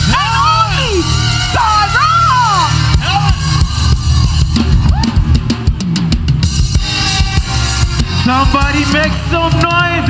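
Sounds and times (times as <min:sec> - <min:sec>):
bass line: 0:00.0 - 0:10.0
drum kit hits: 0:02.9 - 0:09.9.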